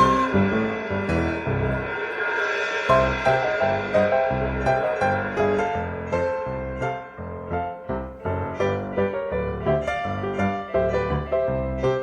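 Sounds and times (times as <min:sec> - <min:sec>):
bass notes and chords: 0:00.0 - 0:02.0
high whistle-like tone: 0:00.0 - 0:04.1.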